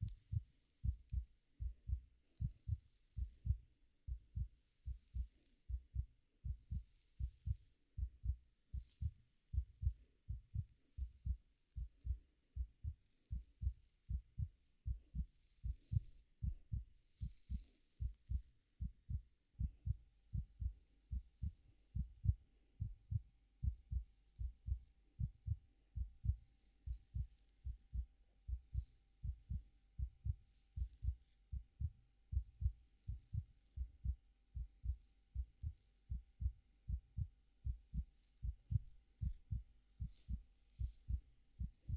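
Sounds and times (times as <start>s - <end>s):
heartbeat thumps: 0.0s - 41.9s
fingers rustling in hair: 12.9s - 18.6s, 26.2s - 28.0s, 37.7s - 41.9s.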